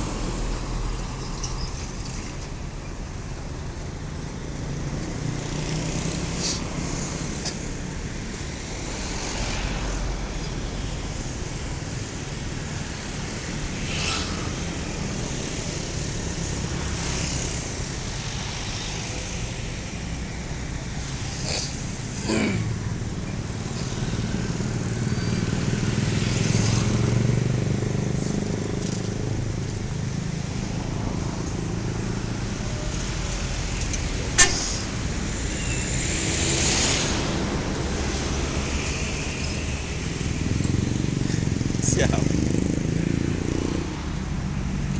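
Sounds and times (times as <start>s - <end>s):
bus engine humming: 0.0s - 13.8s, 19.1s - 44.9s
sharp click: 34.4s - 34.9s
short hissing noises: 34.4s - 36.0s.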